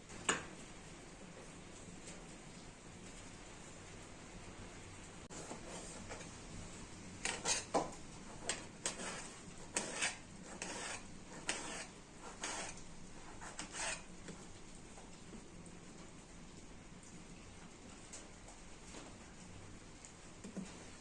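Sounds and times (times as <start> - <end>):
utensils scraping dishes: 7.2 - 12.8, 13.4 - 14.1.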